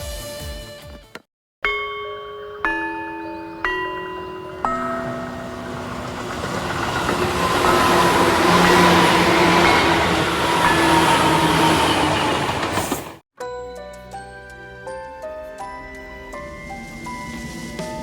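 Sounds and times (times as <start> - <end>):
train rumbling on rails: 4.2 - 13.2
squealing tones: 4.5 - 13.1.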